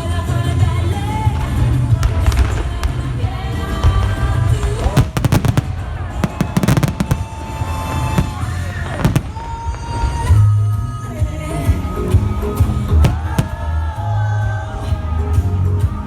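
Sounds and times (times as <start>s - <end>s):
orchestral show music: 0.0s - 16.0s
fireworks bangs: 1.0s - 11.1s, 12.2s - 14.8s.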